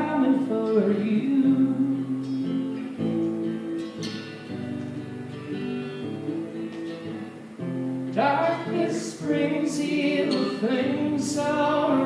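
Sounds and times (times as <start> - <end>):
acoustic guitar chords: 0.0 - 12.0.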